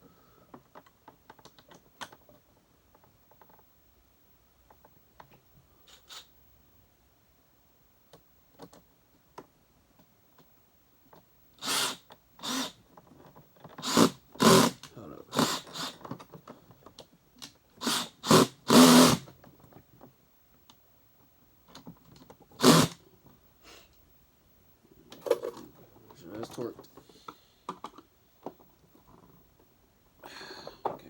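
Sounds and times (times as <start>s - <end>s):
power screwdriver driving screws: 11.6s - 12.8s, 13.8s - 16.0s, 17.8s - 19.3s, 22.6s - 23.0s.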